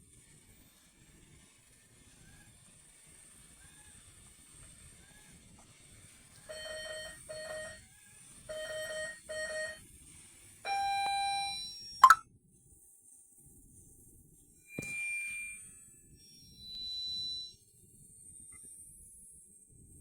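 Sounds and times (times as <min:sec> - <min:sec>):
electronic beeping: 0:06.5 - 0:07.8, 0:10.7 - 0:12.2, 0:14.7 - 0:15.6, 0:16.3 - 0:17.6
faint high whine: 0:10.7 - 0:12.2, 0:14.7 - 0:17.7.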